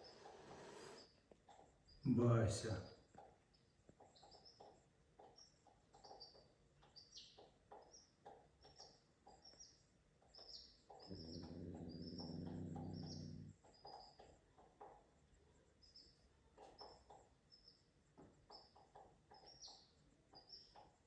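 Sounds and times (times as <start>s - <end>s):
small birds chirping: 0.0s - 21.0s.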